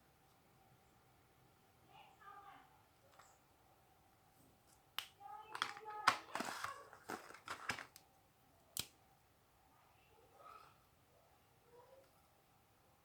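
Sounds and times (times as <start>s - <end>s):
packaging crinkling and rustling: 5.5s - 8.0s.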